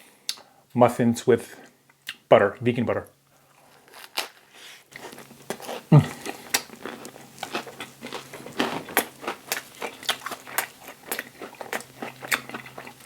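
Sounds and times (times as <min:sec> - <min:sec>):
faint steady hum: 0:00.0 - 0:13.0
close chewing with mouth clicks: 0:03.4 - 0:13.0.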